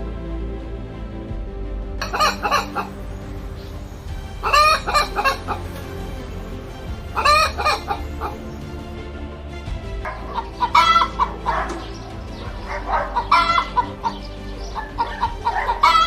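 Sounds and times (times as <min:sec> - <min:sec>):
chickens clucking: 0:02.0 - 0:02.9, 0:07.2 - 0:08.4, 0:10.1 - 0:16.0.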